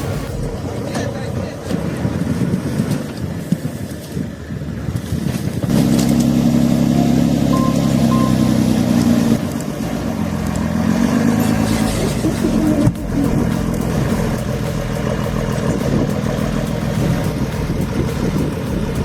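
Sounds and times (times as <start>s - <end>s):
heavy machinery engine running: 5.7s - 19.0s.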